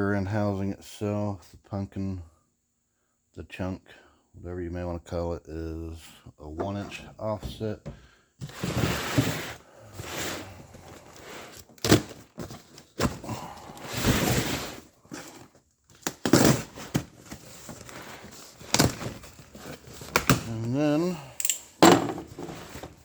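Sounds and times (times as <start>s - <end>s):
packaging rustling: 10.3s - 20.6s.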